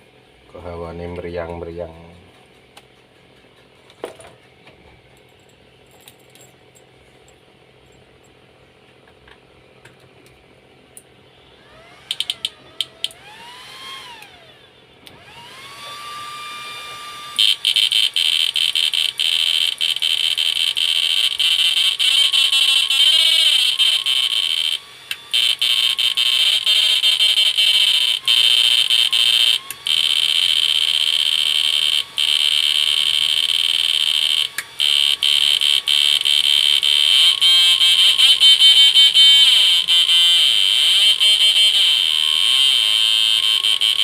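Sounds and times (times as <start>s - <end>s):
inverter whining: 11.3s - 44.0s.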